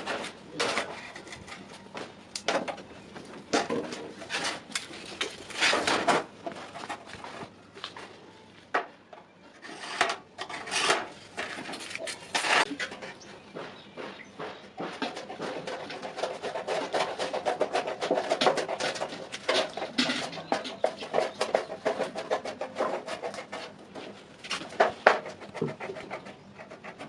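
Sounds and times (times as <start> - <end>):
metal scraping and clinking: 9.6 - 13.2.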